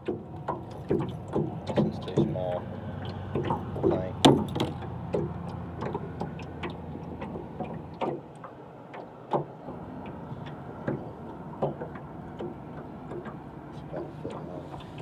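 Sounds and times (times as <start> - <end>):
fishing tackle clicking and knocking: 0.0 - 9.5.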